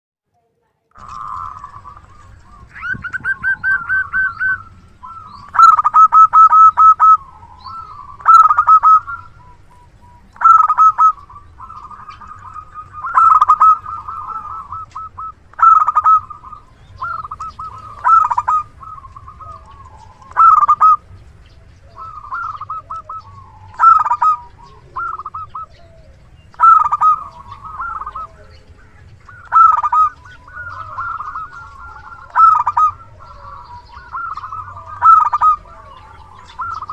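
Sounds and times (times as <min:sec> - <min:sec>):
dove cooing: 0:01.0 - 0:36.9.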